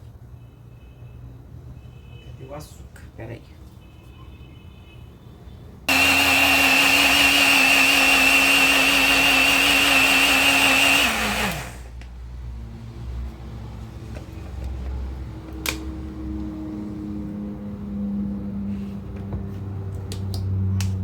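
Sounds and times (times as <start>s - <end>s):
blender motor whining: 5.9s - 11.9s.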